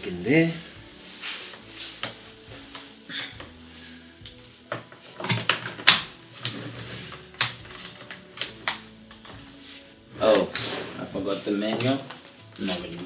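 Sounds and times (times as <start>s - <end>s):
knocks and clicks of handling: 4.2s - 9.5s.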